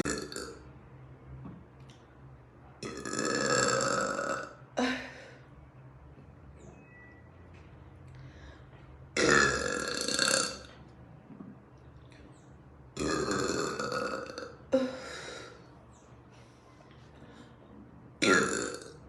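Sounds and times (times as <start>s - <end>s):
woman burping loudly: 0.0s - 0.6s, 2.8s - 5.4s, 9.2s - 10.7s, 13.0s - 15.6s, 18.2s - 19.0s.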